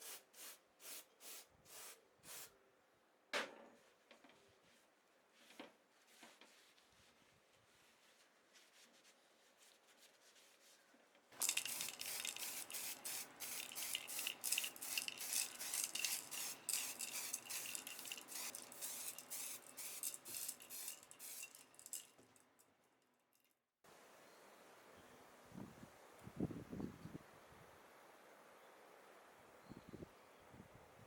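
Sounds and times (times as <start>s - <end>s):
arc welding sizzling crackle: 11.4s - 22.0s.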